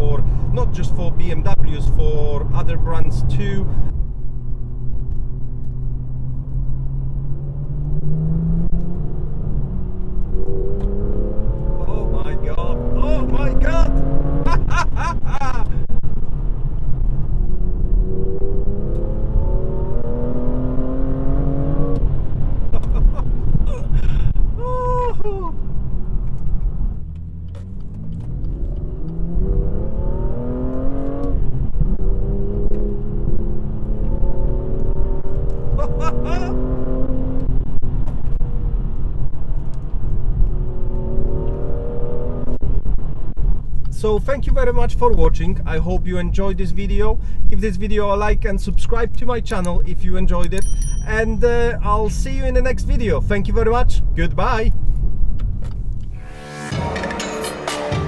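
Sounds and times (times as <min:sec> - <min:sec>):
car engine droning while driving: 0:00.0 - 0:56.7
road rumble: 0:00.0 - 0:58.0
short high tone: 0:50.6 - 0:51.4.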